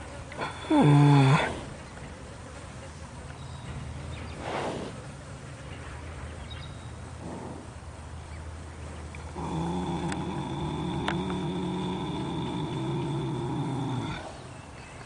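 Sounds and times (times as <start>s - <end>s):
horse snoring: 0.0s - 1.8s, 4.4s - 5.0s, 7.2s - 7.8s, 9.3s - 14.6s.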